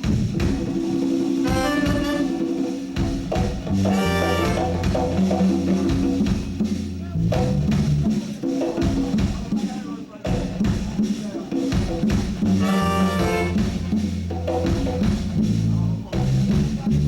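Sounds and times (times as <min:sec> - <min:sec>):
drum kit: 0:00.0 - 0:17.0
live reggae band playing: 0:00.0 - 0:17.0
bass groove: 0:01.5 - 0:02.4, 0:03.0 - 0:09.4, 0:11.9 - 0:17.0.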